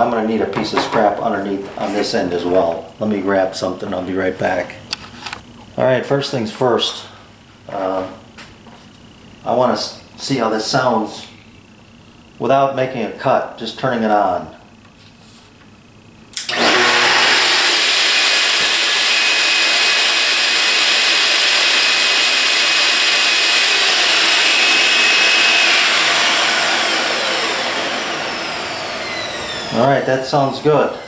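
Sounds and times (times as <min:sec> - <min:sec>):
saw motor whining: 0:16.4 - 0:31.0.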